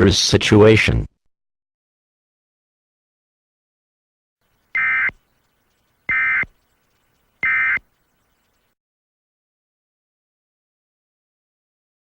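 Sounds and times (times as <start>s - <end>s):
two-tone digital data warble: 4.8s - 8.6s.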